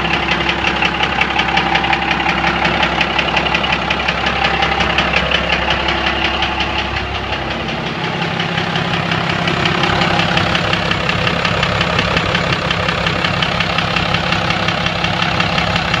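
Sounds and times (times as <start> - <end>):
diesel engine idling with knock: 0.0 - 16.0.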